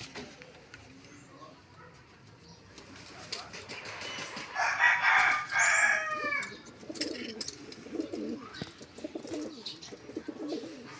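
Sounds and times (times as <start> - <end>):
rooster crowing: 4.6 - 6.5
pigeons cooing: 6.1 - 10.9.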